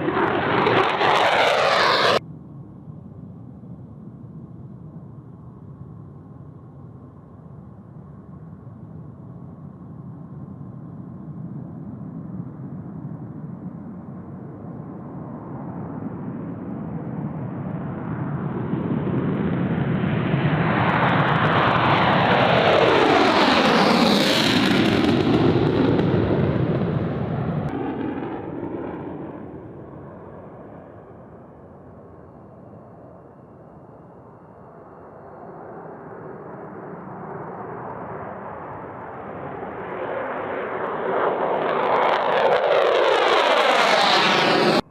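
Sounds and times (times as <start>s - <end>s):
fighter jet passing: 0.0s - 2.2s, 14.4s - 32.2s, 34.0s - 44.9s.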